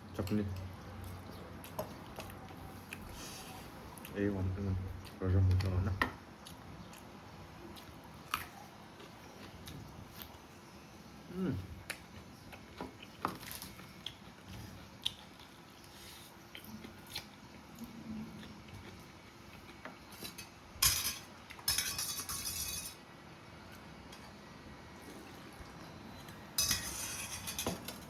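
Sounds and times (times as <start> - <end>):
cutlery clinking against a bowl: 20.2 - 23.0, 26.6 - 28.0.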